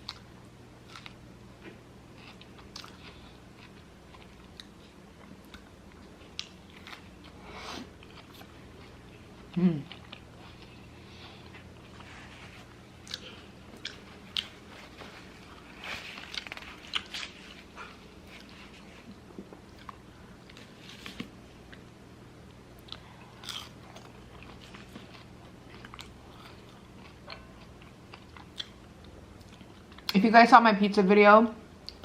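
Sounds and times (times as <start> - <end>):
crisp crunching and chewing: 0.0 - 1.2, 13.0 - 18.8, 22.8 - 30.2.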